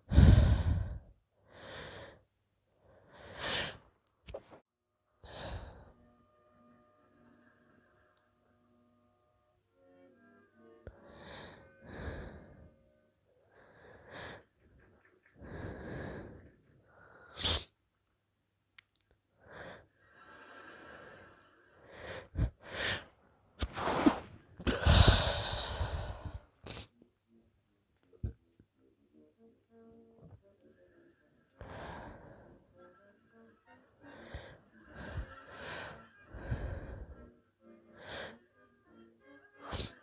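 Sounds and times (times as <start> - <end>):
woman gasping breaths: 0.0 - 2.2, 19.4 - 23.1, 24.6 - 26.8.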